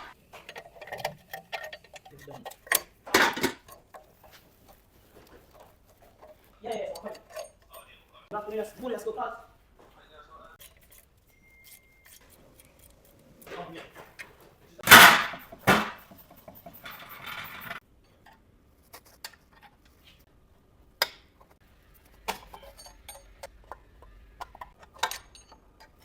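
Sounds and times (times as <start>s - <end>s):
metal tools clanking: 0.0s - 8.9s, 10.6s - 18.3s, 22.3s - 23.8s, 24.4s - 26.0s.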